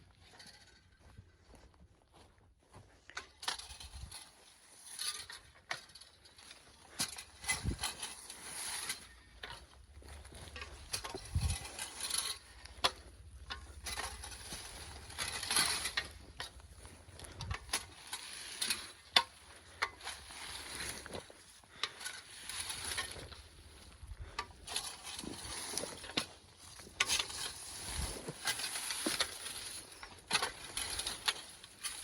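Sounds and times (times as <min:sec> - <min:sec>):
rustling of twigs and needles: 0:06.1 - 0:32.0.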